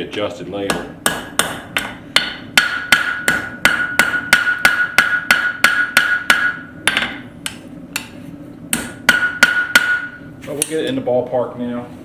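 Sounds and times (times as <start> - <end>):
hammer striking steel on anvil: 0.7 - 8.1, 8.7 - 10.8.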